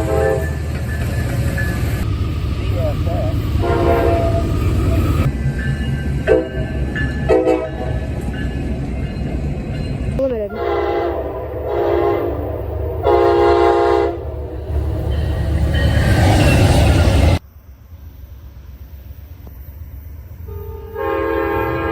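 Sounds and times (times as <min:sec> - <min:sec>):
locomotive air horn: 0:00.0 - 0:00.6, 0:03.6 - 0:05.3, 0:06.3 - 0:08.0, 0:10.5 - 0:14.6, 0:20.5 - 0:21.9
low rumble of moving train: 0:00.0 - 0:21.9.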